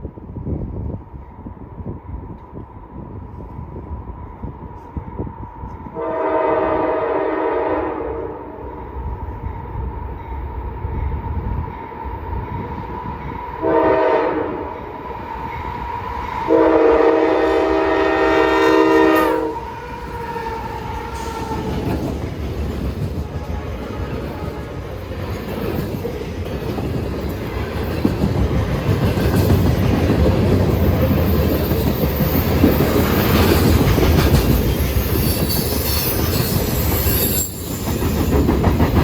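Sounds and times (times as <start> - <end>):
low rumble of train: 0.0 - 39.0
locomotive air horn blasts: 6.0 - 8.6, 13.6 - 14.7, 16.5 - 19.7.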